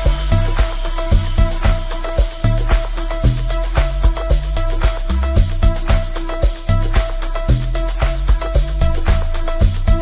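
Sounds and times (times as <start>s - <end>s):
dance music with drum beat: 0.0s - 10.0s
deep bass notes: 0.0s - 10.0s.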